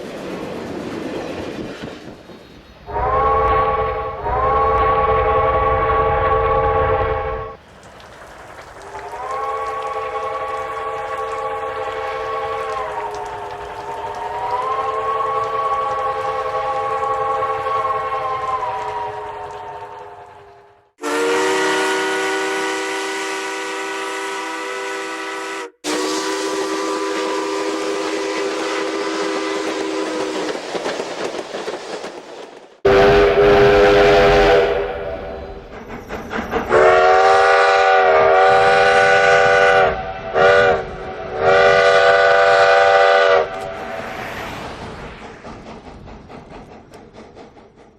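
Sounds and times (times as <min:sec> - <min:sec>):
steam hissing: 0:00.0 - 0:24.6, 0:25.9 - 0:47.9
steam locomotive chime whistle: 0:02.9 - 0:07.6, 0:08.8 - 0:30.5, 0:32.9 - 0:44.0.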